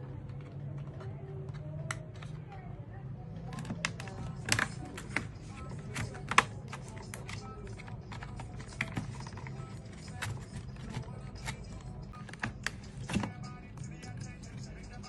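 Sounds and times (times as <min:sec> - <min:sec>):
music: 0:03.4 - 0:15.0
plastic clips snapping: 0:03.5 - 0:13.4.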